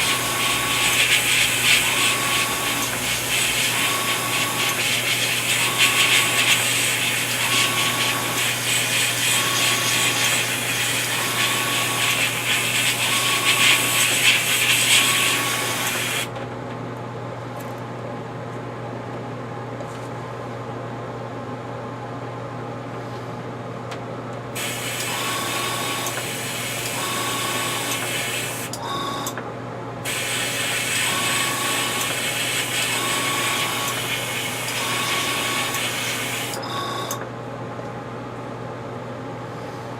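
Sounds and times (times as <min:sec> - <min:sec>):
airbrush hissing: 0:00.0 - 0:16.3, 0:30.1 - 0:36.6.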